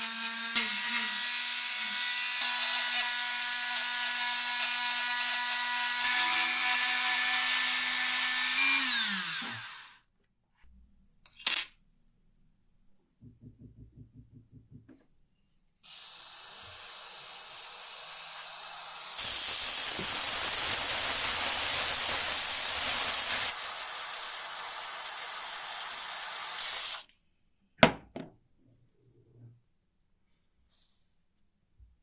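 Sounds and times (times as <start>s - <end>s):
aerosol spraying hiss: 18.4s - 27.0s.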